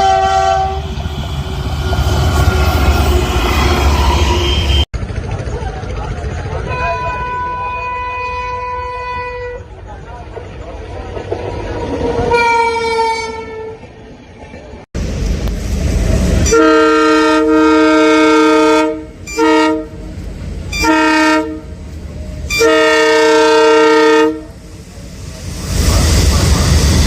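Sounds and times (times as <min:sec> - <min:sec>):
deep multi-note train horn: 0:00.0 - 0:04.9, 0:16.4 - 0:20.1, 0:20.7 - 0:21.8, 0:22.5 - 0:24.6
locomotive horn blast: 0:00.0 - 0:04.9, 0:06.7 - 0:09.7, 0:12.3 - 0:13.9, 0:16.4 - 0:20.1, 0:20.7 - 0:21.8, 0:22.4 - 0:24.6
train rumbling: 0:00.0 - 0:27.0.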